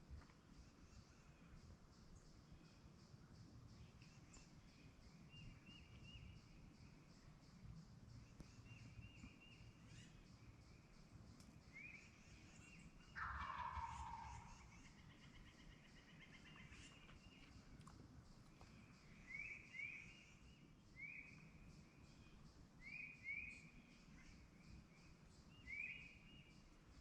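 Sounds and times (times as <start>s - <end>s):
turkey gobbling: 13.2s - 14.8s.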